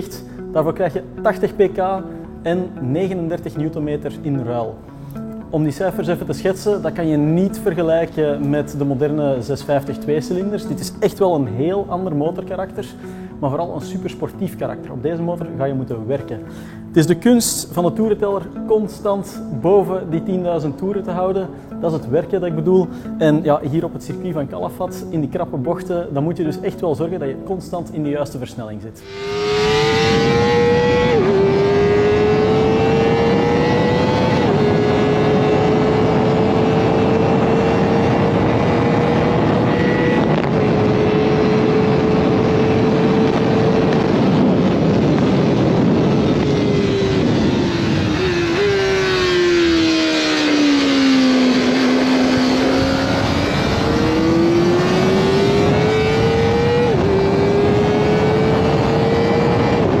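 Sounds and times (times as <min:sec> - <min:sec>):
motorcycle engine revving high: 0:29.0 - 1:00.0.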